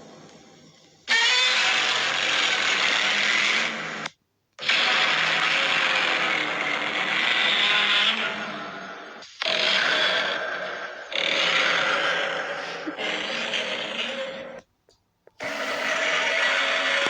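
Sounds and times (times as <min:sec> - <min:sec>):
monster roar: 0:09.4 - 0:14.6, 0:15.4 - 0:17.0.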